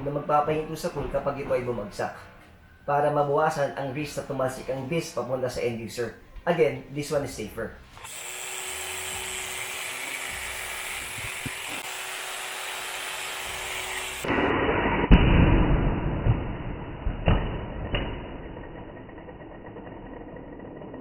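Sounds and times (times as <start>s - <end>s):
angle grinder whining: 7.9s - 14.8s, 18.0s - 21.0s.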